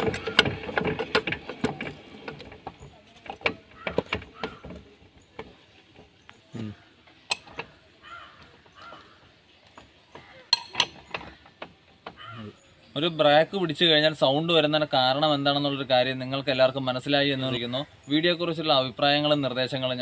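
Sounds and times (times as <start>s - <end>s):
metal tools clicking and clanking: 7.2s - 7.8s, 9.7s - 12.5s.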